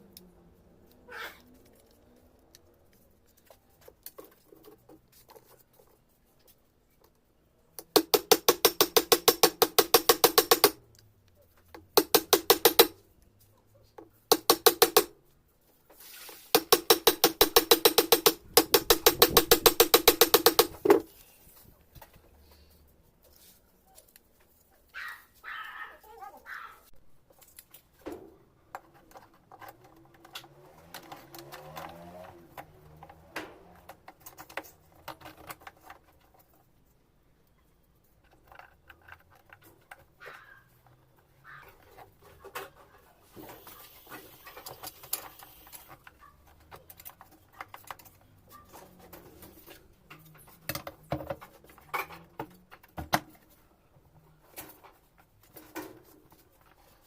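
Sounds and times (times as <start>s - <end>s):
small parts clicking and tapping: 0.0s - 13.3s, 14.0s - 15.4s, 16.4s - 21.2s, 27.3s - 36.7s, 37.4s - 40.2s, 44.2s - 53.6s
sharp knocks: 7.8s - 10.8s, 11.9s - 13.0s, 14.3s - 15.1s, 16.5s - 21.1s.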